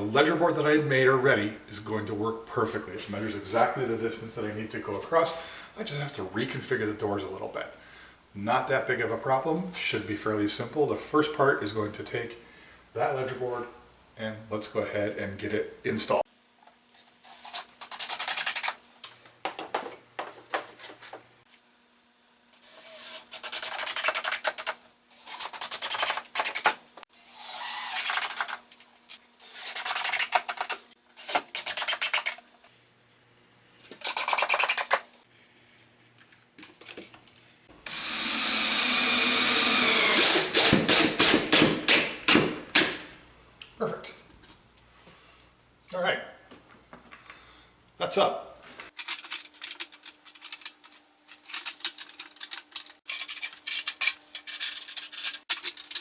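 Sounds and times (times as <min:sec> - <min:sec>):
power driver driving screws: 0:17.0 - 0:19.1, 0:22.6 - 0:32.4, 0:34.0 - 0:35.2.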